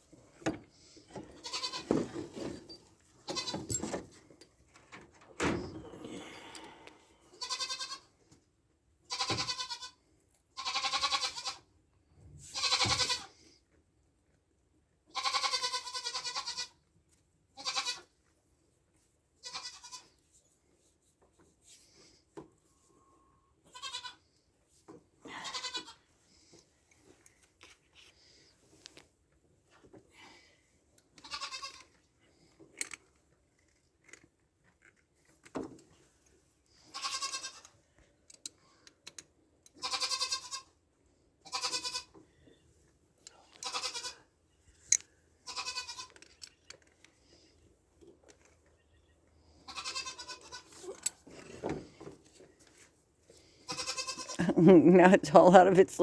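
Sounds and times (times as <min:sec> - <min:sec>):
goats bleating: 0:07.4 - 0:08.0, 0:23.7 - 0:24.2, 0:25.3 - 0:26.0, 0:39.8 - 0:40.6, 0:41.5 - 0:42.1, 0:49.7 - 0:50.7, 0:53.7 - 0:54.6.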